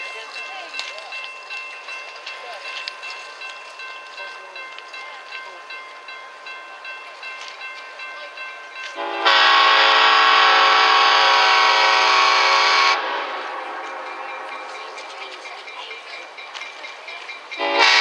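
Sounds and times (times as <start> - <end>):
moving train noise: 0.0 - 18.0
locomotive air horn blast: 9.0 - 14.0, 17.6 - 18.0.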